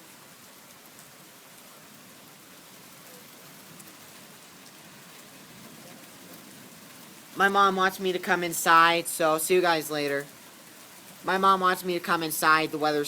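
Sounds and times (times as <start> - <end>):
heavy rain hissing: 0.0 - 13.0
hail ticking: 3.0 - 13.0.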